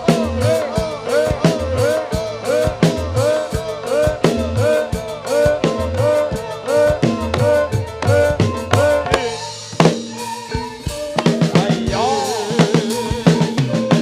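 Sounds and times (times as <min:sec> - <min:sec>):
drums beating steadily: 0:00.0 - 0:14.0.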